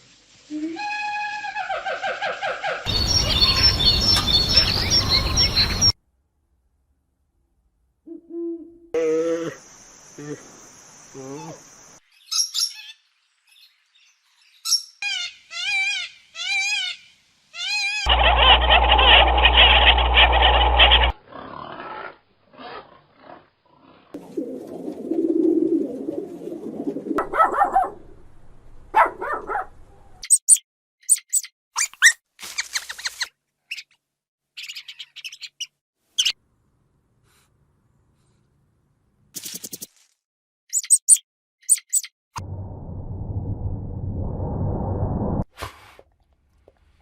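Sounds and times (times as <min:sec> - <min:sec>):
repeated bird calls: 0:02.7 - 0:06.0, 0:34.6 - 0:36.4, 0:40.7 - 0:42.1
high bird chirps: 0:02.9 - 0:06.0, 0:30.2 - 0:32.2, 0:40.7 - 0:42.1
loud noisy animal call: 0:18.0 - 0:21.6.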